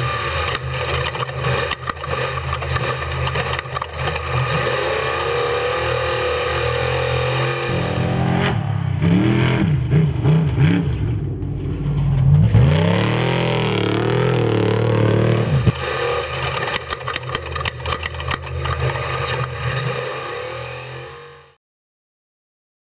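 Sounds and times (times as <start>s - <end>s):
truck engine revving: 0.0s - 21.6s
rattling and clattering: 9.9s - 15.8s
engine knock: 10.6s - 19.5s.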